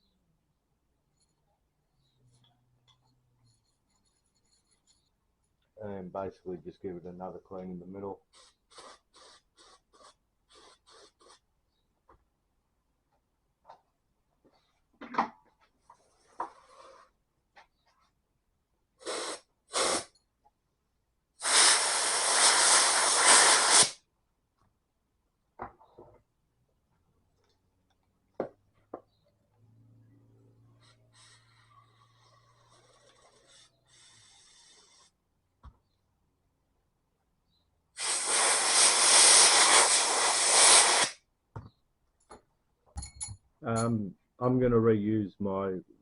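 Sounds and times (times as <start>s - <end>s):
pressurised spray hissing: 8.3s - 11.4s, 19.0s - 20.1s, 21.4s - 24.0s, 30.8s - 35.2s, 38.0s - 41.2s.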